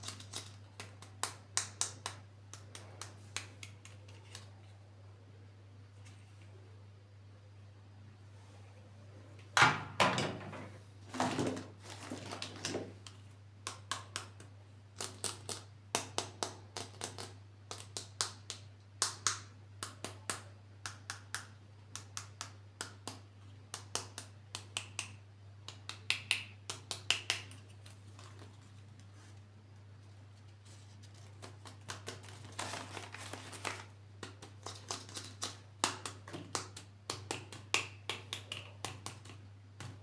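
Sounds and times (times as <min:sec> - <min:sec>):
plastic packaging crackling: 0:11.1 - 0:13.0, 0:31.0 - 0:34.0.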